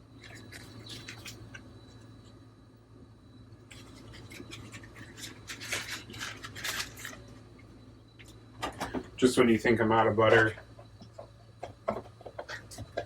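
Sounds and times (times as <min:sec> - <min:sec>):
butter wrapper rustling: 0:03.7 - 0:07.4.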